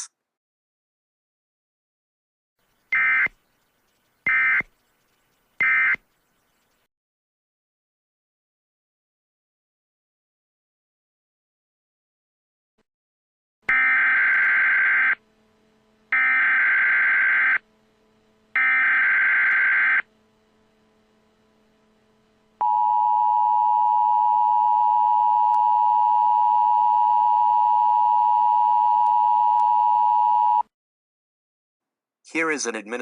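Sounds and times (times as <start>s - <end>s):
harsh digital data warble: 16.1s - 17.7s.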